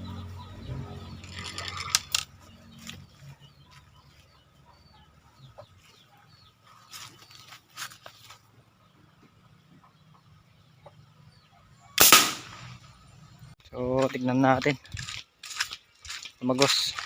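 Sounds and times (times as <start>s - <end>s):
chickens clucking: 0.0s - 12.0s
sharp cracks: 12.0s - 12.9s.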